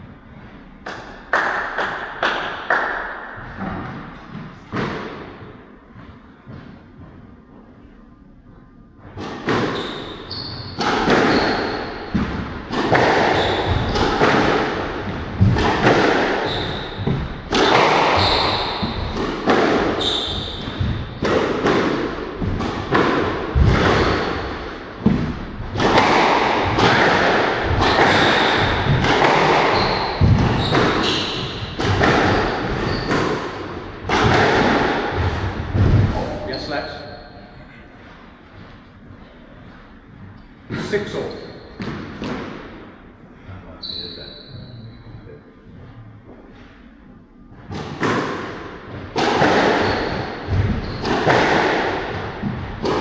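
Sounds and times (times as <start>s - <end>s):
shoes squeaking on court floor: 9.1s - 34.6s, 36.4s - 42.2s, 43.8s - 45.5s, 49.4s - 53.0s
squash ball struck by rackets: 9.2s - 36.4s, 41.7s - 42.9s, 47.6s - 53.0s.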